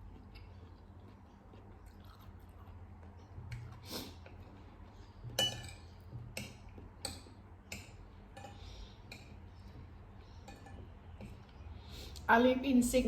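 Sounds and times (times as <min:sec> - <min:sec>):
metal spoon clinking on dish: 0:05.3 - 0:09.4.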